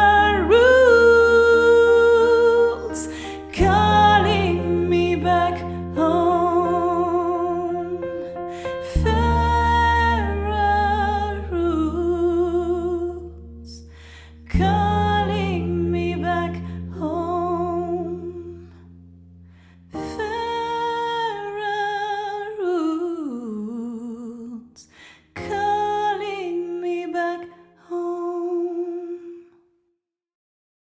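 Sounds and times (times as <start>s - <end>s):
woman singing wordless melody: 0.0s - 18.9s, 19.9s - 29.6s
sustained piano chords: 0.0s - 22.6s.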